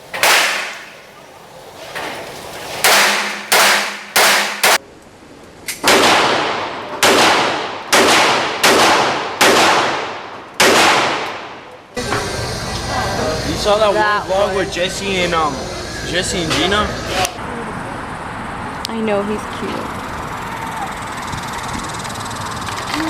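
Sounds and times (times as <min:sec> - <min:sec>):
gunshots: 0:00.1 - 0:01.0, 0:02.8 - 0:04.8, 0:05.8 - 0:11.7.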